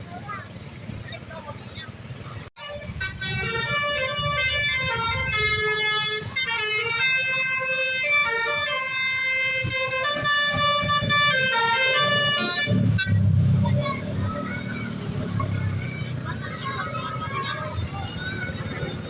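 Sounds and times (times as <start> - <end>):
low vehicle rumble: 0.0 - 19.0
bus horn playing a melody: 2.6 - 13.5.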